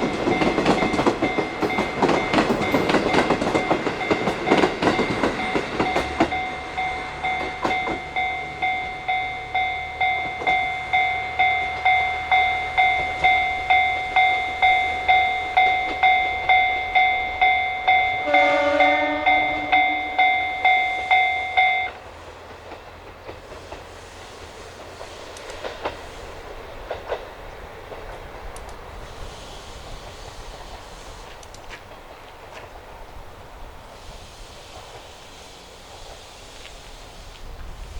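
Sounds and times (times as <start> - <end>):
train wheels clattering over rail joints: 0.0 - 17.5, 22.0 - 29.2, 29.8 - 33.2
level crossing warning bell ringing: 0.0 - 22.0
train horn blast: 18.1 - 20.4.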